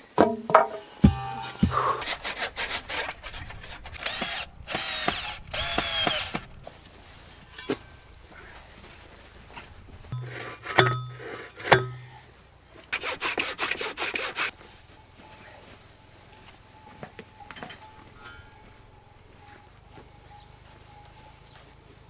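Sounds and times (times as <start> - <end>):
sharp knocks: 0.2 - 2.0
rapid scraping on wood: 1.0 - 6.5.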